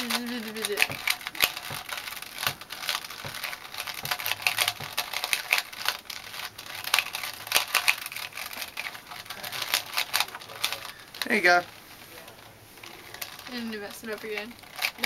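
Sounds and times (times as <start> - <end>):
plastic puzzle cube clicking: 0.0 - 11.3.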